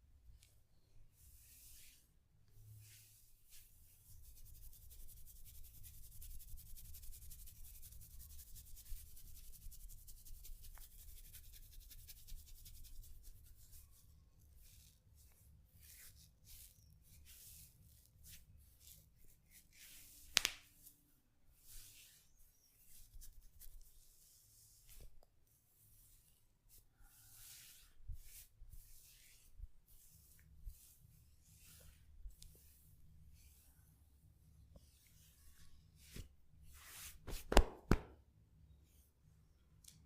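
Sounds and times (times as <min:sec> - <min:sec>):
hair and scalp scratching: 0:02.8 - 0:14.0, 0:21.6 - 0:25.1.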